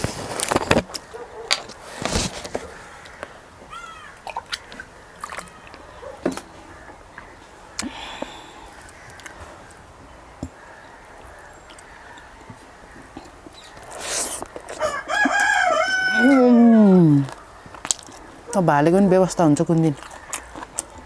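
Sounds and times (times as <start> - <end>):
chewing and mouth smacks: 11.2 - 16.1, 17.1 - 21.0.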